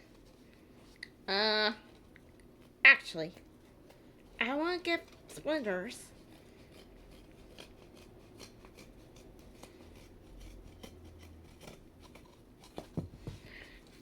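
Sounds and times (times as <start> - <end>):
scissors snipping packaging: 4.5 - 14.0.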